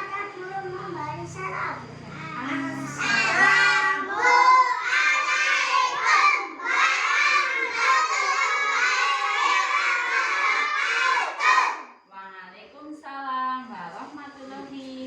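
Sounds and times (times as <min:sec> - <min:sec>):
children chanting in unison: 0:02.3 - 0:12.0.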